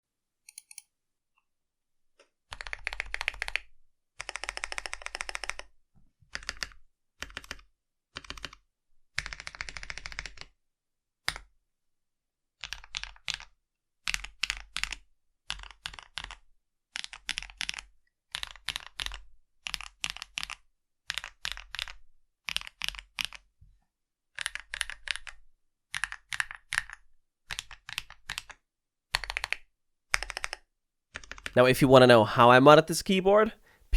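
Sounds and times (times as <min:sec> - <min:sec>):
typing on mechanical keyboard: 0:02.5 - 0:05.7, 0:06.3 - 0:07.6, 0:08.2 - 0:08.6, 0:09.2 - 0:10.5, 0:12.6 - 0:13.5, 0:14.1 - 0:16.4, 0:17.0 - 0:23.4, 0:24.4 - 0:31.6.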